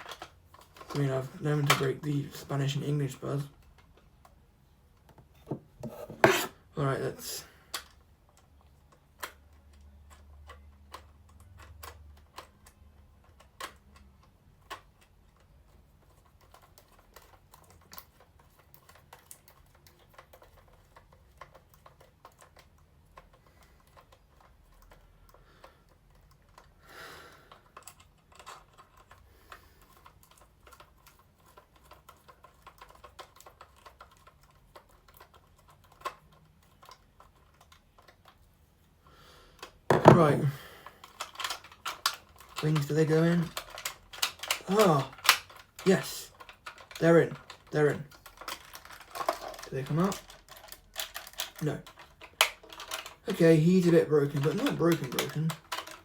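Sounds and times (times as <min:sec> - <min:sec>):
rubbing scrape: 0:05.8 - 0:06.6.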